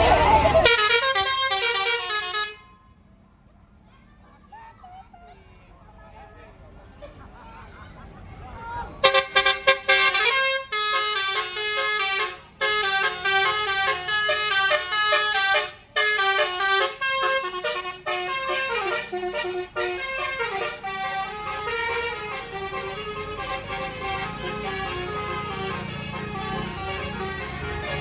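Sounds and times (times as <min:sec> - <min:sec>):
musical air horn melody: 0:00.0 - 0:02.6, 0:09.0 - 0:28.0.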